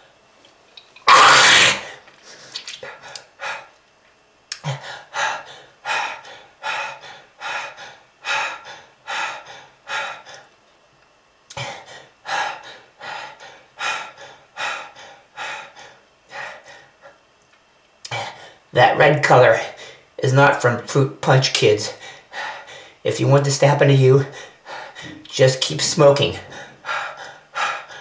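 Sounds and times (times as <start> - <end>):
person gasping for breath: 4.6 - 10.5, 11.5 - 17.0.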